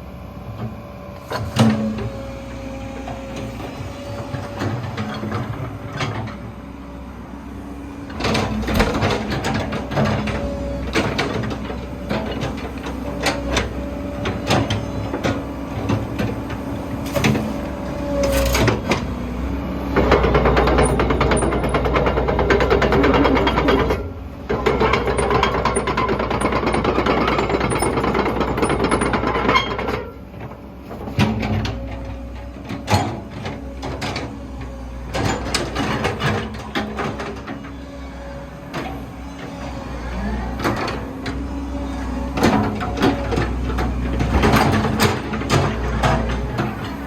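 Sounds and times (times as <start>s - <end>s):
excavator diesel engine running: 0.0s - 47.0s
hydraulics working: 8.2s - 30.4s.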